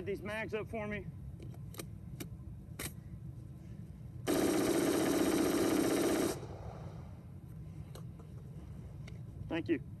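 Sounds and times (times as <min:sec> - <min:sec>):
rifle rapid-fire burst: 0:04.3 - 0:07.0.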